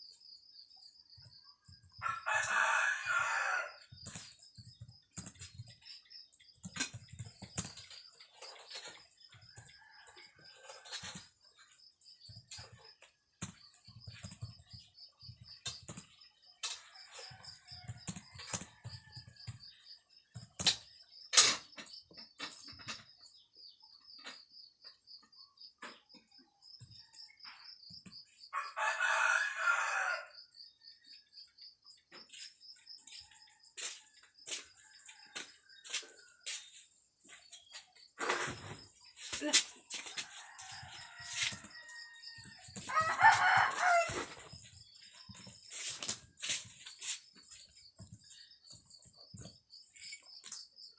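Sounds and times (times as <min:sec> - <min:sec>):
rooster crowing: 0:02.0 - 0:03.8, 0:28.5 - 0:30.4, 0:40.0 - 0:44.6.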